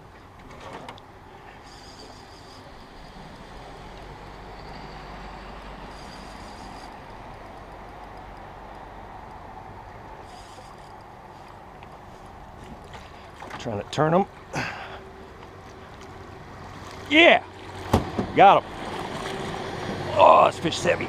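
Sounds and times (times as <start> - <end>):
faint high whine: 1.2 - 8.4
river water rushing: 14.5 - 21.0.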